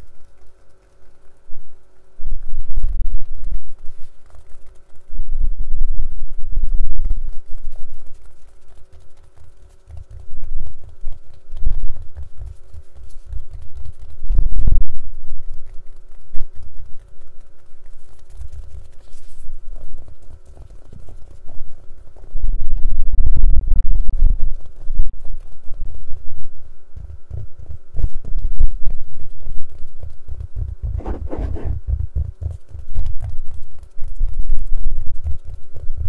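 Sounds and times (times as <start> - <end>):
fingers tapping a case: 24.6 - 36.0.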